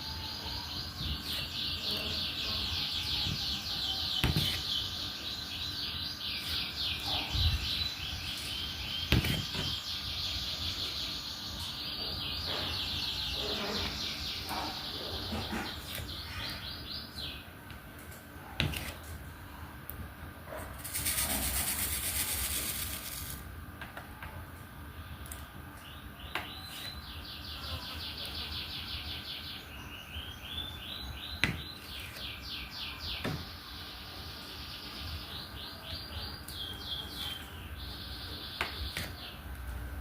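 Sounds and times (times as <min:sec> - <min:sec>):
hissing rattle: 0:20.8 - 0:23.4.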